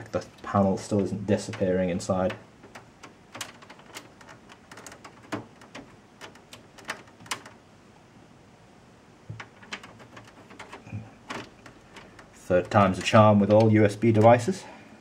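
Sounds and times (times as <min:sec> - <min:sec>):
plastic and metal parts clicking: 0:01.4 - 0:07.6, 0:09.3 - 0:14.4.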